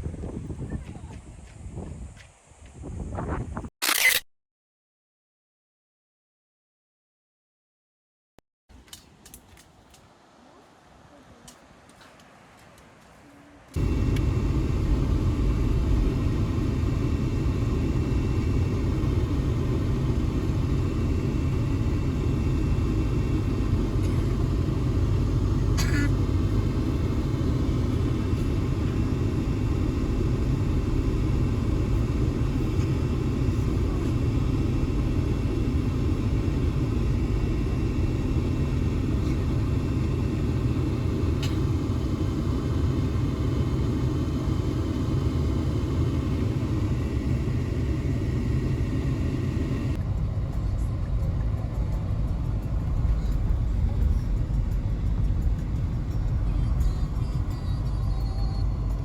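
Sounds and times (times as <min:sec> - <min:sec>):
road noise: 0:08.7 - 0:59.0
car engine rumbling: 0:13.8 - 0:59.0.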